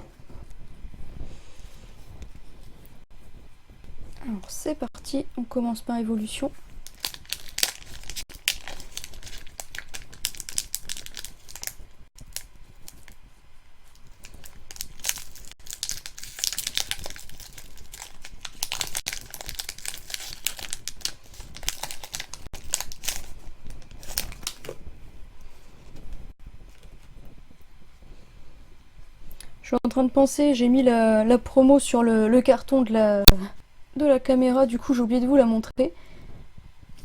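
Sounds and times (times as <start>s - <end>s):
foil wrapper tearing and crinkling: 6.8s - 13.2s, 13.9s - 24.8s.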